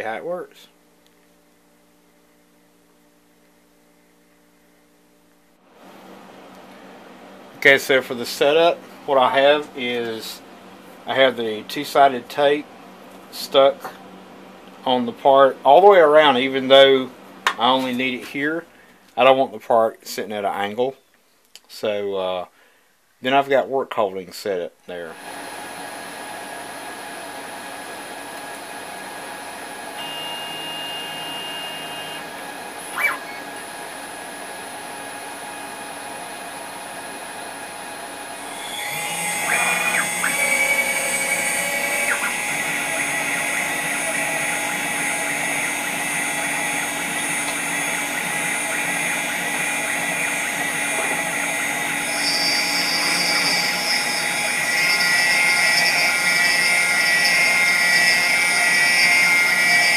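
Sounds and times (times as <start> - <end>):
router spindle whine: 28.4 - 59.9
end mill cutting metal: 38.2 - 59.9.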